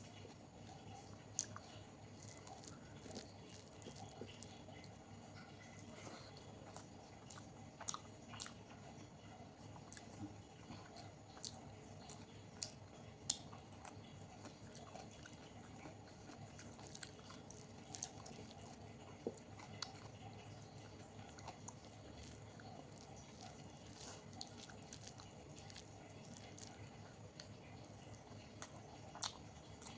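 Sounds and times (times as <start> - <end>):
person chewing: 0.2 - 29.9.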